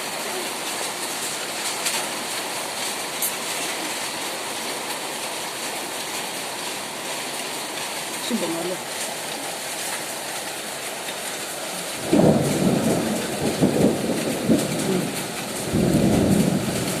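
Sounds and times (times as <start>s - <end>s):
hail and heavy rain pelting: 0.0s - 17.0s.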